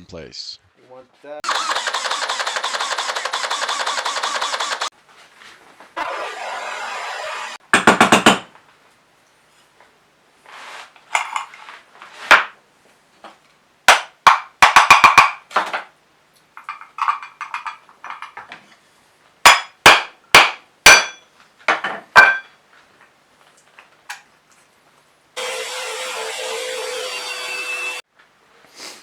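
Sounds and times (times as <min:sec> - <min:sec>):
motor running: 0:01.4 - 0:04.9, 0:06.0 - 0:07.6.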